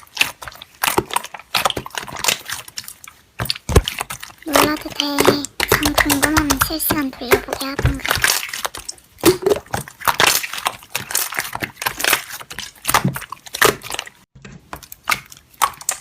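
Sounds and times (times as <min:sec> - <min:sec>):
slime crackling and popping: 0:00.0 - 0:16.0.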